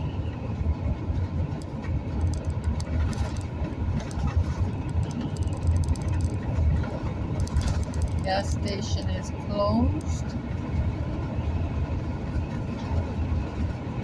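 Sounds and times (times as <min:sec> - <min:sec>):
vehicle engine and road noise: 0:00.0 - 0:14.0.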